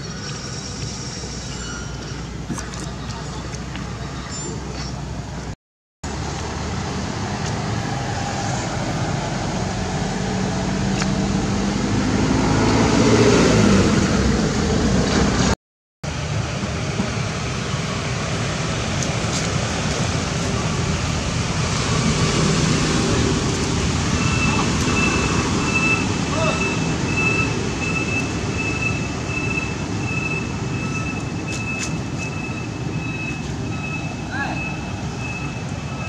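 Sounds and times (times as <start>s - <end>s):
road traffic noise: 0.0s - 36.0s
vehicle engine passing: 6.1s - 15.6s, 16.8s - 31.2s.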